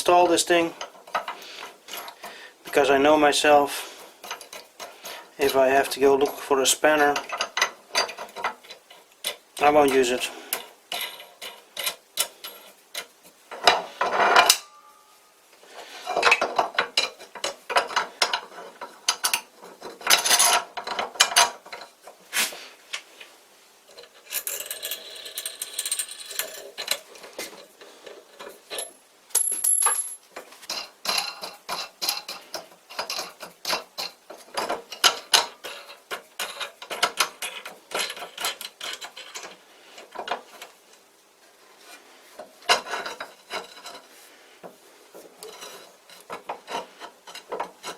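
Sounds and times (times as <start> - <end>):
metal clinking and knocking: 10.0 - 15.0, 28.3 - 40.7.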